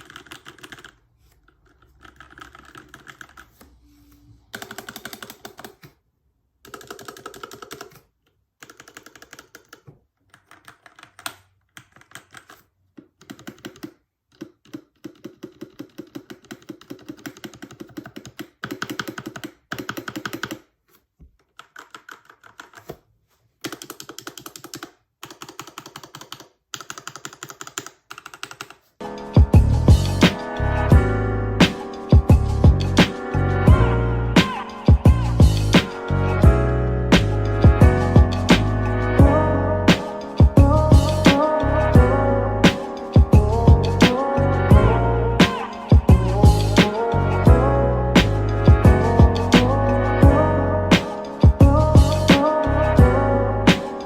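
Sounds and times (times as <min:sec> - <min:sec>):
mechanical keyboard typing: 0:00.0 - 0:03.7, 0:04.5 - 0:06.0, 0:06.6 - 0:20.8, 0:21.4 - 0:23.0, 0:23.6 - 0:29.3
music: 0:29.0 - 0:54.0.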